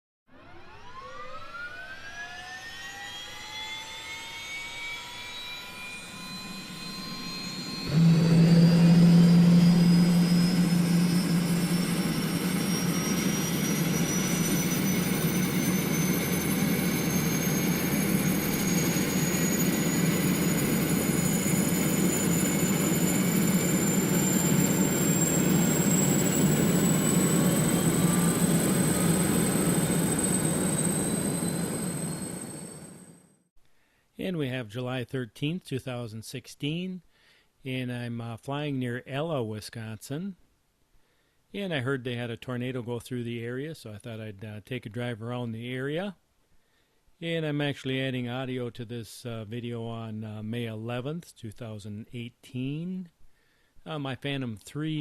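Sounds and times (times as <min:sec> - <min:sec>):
jet engine spooling up: 0:00.4 - 0:33.3
thin high whine: 0:02.8 - 0:33.5.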